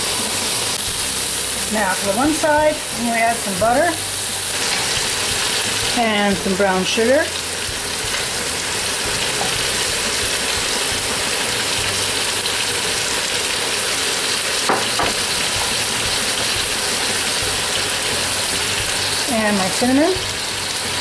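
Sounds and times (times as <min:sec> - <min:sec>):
meat sizzling in a pot: 0:00.0 - 0:21.0.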